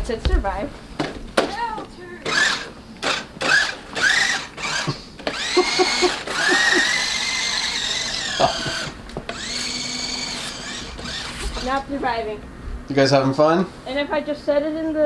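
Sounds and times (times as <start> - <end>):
small motor whining: 2.2 - 12.3.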